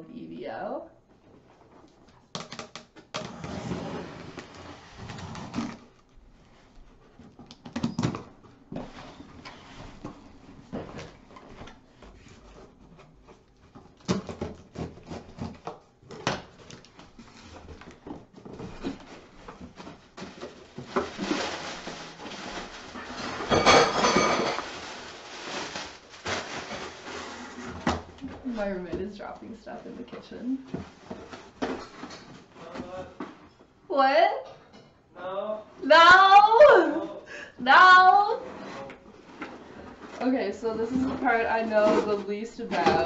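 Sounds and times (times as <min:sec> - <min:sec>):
packaging rustling and knocking: 0:07.2 - 0:29.4, 0:30.0 - 0:33.5
things dropped clattering: 0:22.9 - 0:24.9.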